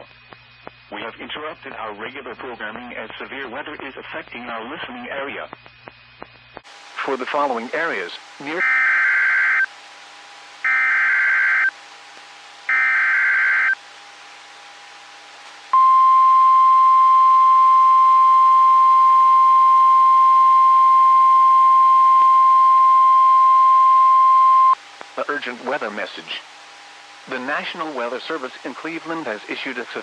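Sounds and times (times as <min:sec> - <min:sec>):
buzzy screeching data bursts: 0:08.4 - 0:09.7, 0:10.6 - 0:11.7, 0:12.7 - 0:13.8
steady warning alarm tone: 0:08.4 - 0:09.7, 0:10.6 - 0:11.7, 0:12.7 - 0:13.8.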